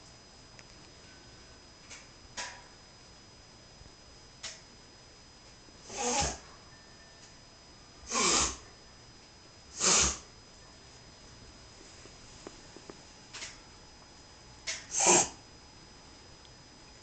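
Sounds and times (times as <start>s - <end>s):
pet wheezing: 5.8s - 6.4s, 8.1s - 8.6s, 9.7s - 10.3s, 14.7s - 15.4s.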